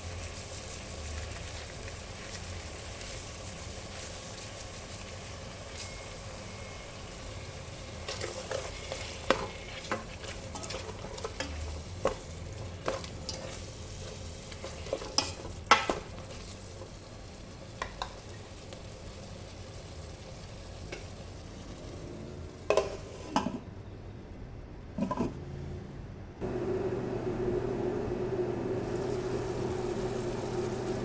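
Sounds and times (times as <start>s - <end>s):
food sizzling in a pan: 0.0s - 23.4s, 28.5s - 31.0s
low motor hum: 25.4s - 31.0s.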